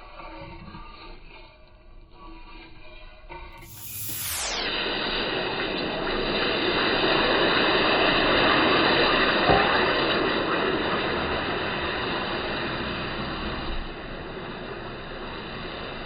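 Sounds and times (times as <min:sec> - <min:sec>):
steady rushing hiss: 0:03.6 - 0:08.2.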